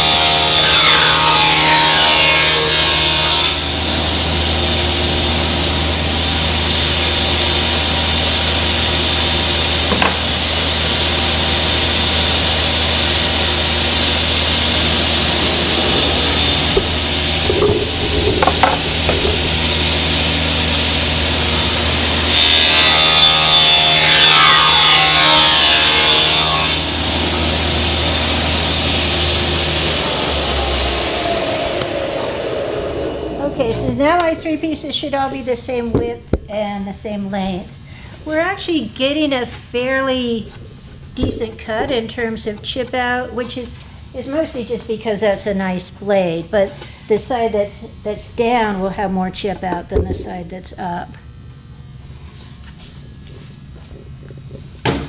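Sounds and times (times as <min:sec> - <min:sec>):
saw cutting through wood: 0:00.0 - 0:08.5, 0:11.2 - 0:33.8
table saw blade spinning: 0:12.7 - 0:20.9.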